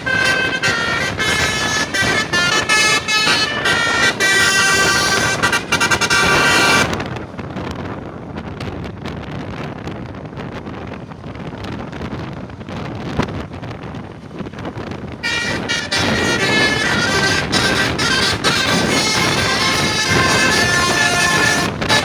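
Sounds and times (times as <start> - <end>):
bus musical horn: 0.0 - 7.7, 14.4 - 22.0.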